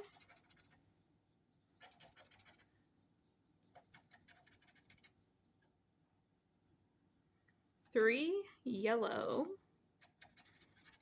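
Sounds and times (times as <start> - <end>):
coin scratching lottery ticket: 4.0 - 5.1, 10.0 - 11.0.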